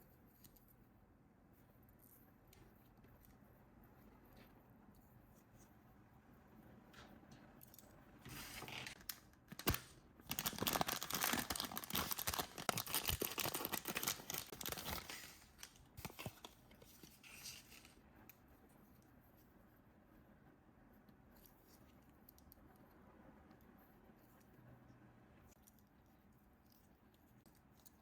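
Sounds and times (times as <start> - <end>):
packaging tearing and crinkling: 8.4 - 16.6
packaging click: 8.7 - 16.5.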